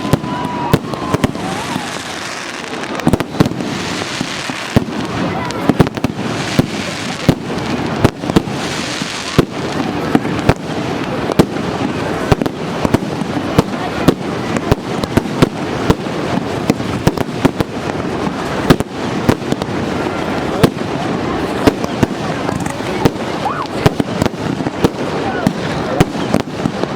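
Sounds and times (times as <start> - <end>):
fireworks bangs: 0.0 - 26.9
steady background noise: 0.0 - 26.9.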